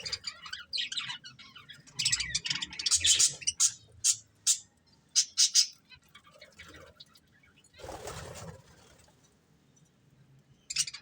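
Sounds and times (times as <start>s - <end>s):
budgerigars chirping and chattering: 0.0s - 7.6s, 10.6s - 11.0s.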